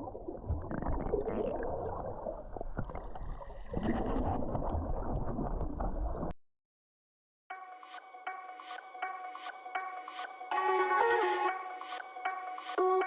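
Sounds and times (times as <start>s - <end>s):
muffled water sloshing and gurgling: 0.0s - 6.4s.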